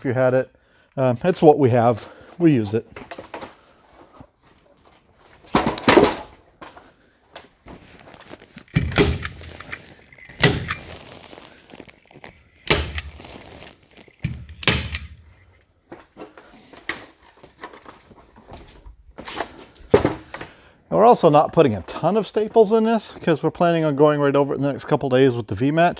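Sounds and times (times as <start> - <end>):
staple gun firing through plastic: 8.7 - 10.9, 12.6 - 13.3, 14.2 - 15.2.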